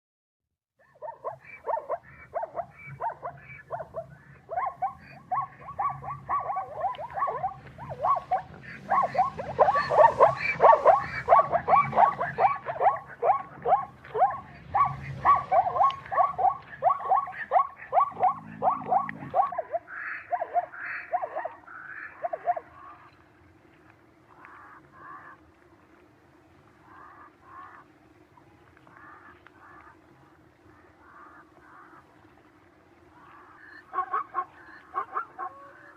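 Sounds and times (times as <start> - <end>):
short animal calls: 1.0 - 23.1
steady low hum: 1.4 - 35.9.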